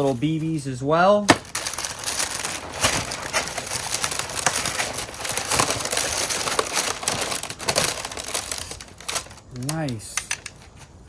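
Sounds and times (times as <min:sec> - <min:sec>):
packaging crinkling and rustling: 0:00.0 - 0:11.0
small clicks and knocks: 0:09.6 - 0:10.9.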